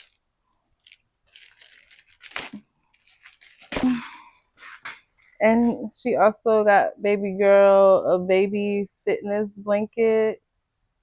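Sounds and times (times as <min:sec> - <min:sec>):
gift packaging rustling and tearing: 0:00.0 - 0:05.4.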